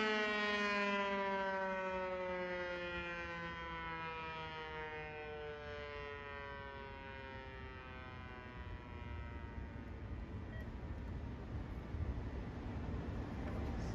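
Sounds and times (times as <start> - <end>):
siren winding down: 0.0 - 10.6.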